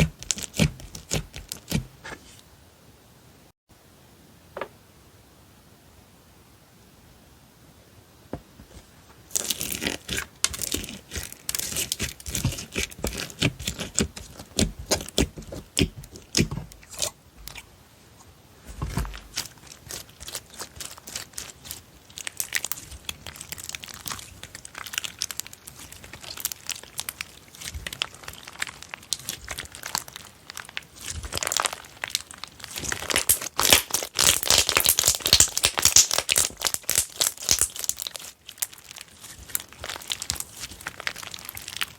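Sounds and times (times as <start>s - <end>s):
slime crackling and popping: 0.0s - 1.8s, 9.3s - 17.2s, 19.0s - 41.9s.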